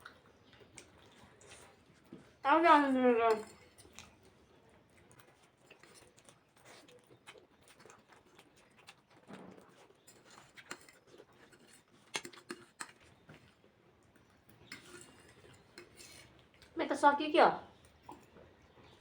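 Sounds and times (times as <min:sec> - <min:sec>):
utensils tapping a bowl: 0:03.1 - 0:03.6.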